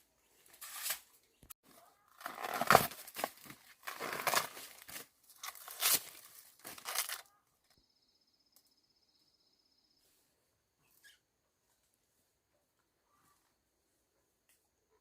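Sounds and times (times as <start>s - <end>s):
rustling and crinkling: 1.7s - 7.3s.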